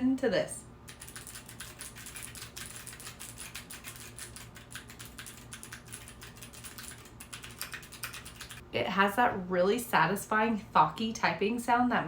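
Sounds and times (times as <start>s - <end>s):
mechanical keyboard typing: 0.9s - 8.6s.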